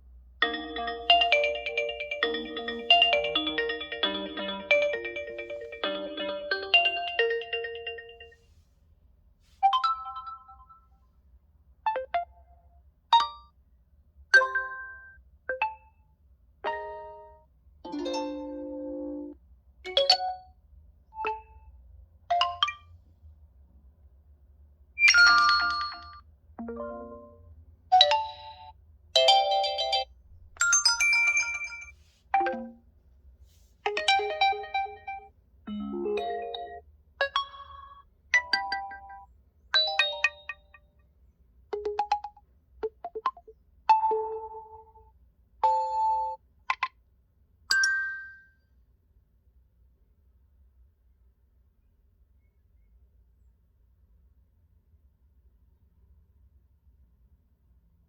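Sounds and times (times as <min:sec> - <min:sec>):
electronic phone tones and chimes: 0:00.5 - 0:08.4.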